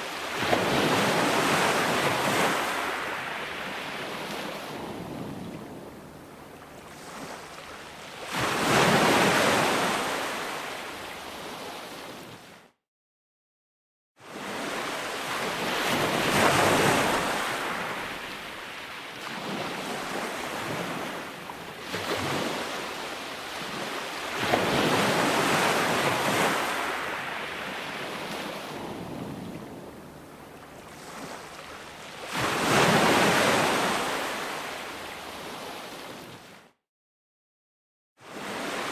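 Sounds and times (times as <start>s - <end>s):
ocean waves breaking on shore: 0.0s - 12.7s, 14.2s - 36.8s, 38.2s - 38.9s.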